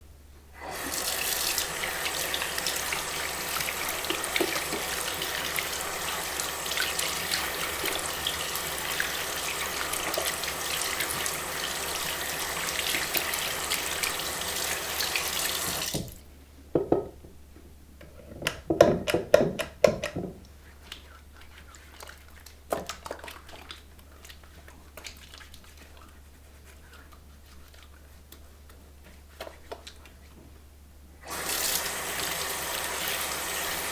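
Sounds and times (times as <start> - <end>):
tap water running into a sink: 0.6 - 16.2, 31.2 - 33.9
wet hand sounds: 0.6 - 16.2, 20.5 - 30.3
water dripping: 0.8 - 16.2.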